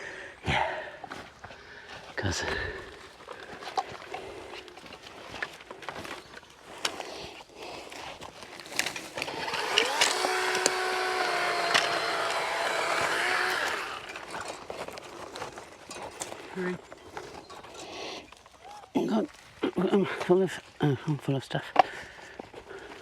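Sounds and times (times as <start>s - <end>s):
chainsaw cutting wood: 8.7s - 16.4s.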